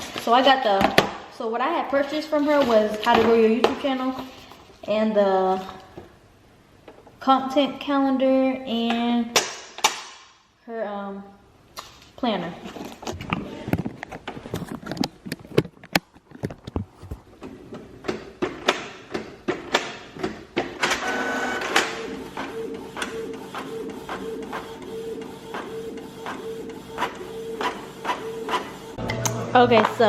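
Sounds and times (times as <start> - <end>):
printer hum with regular ticks: 21.0 - 29.0
printer rushing whir: 21.0 - 29.6.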